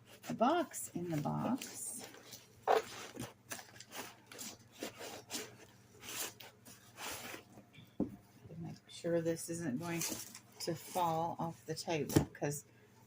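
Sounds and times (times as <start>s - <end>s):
cardboard scraping on cardboard: 0.0s - 7.5s.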